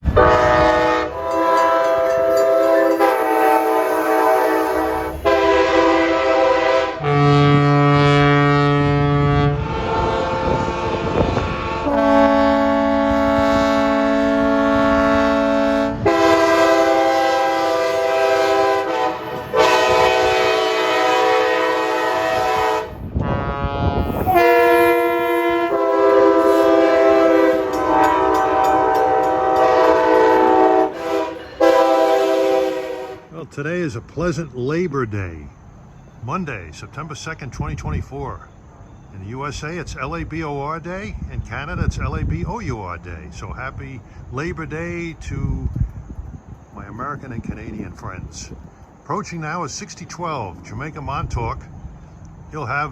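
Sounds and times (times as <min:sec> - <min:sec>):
train horn blasts: 0:00.0 - 0:33.4
train running by: 0:00.0 - 0:37.4, 0:46.4 - 0:52.9.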